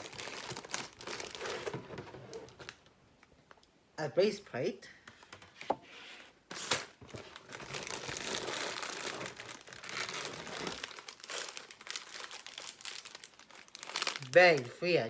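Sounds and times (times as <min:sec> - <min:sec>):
plastic bags crinkling: 0:00.0 - 0:03.6, 0:06.6 - 0:14.8.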